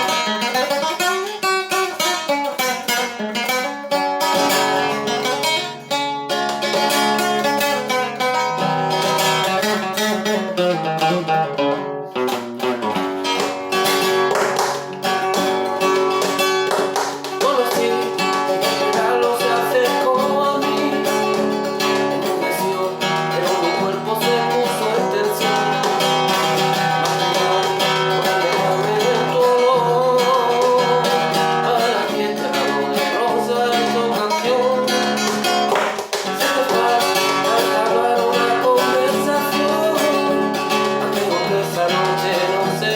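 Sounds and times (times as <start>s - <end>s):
acoustic guitar picked and strummed: 0.0s - 42.9s
person singing: 17.0s - 42.9s.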